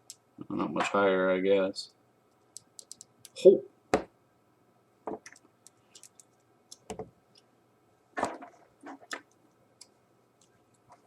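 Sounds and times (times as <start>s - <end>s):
plastic action figures clicking: 2.5s - 3.4s, 5.2s - 7.0s.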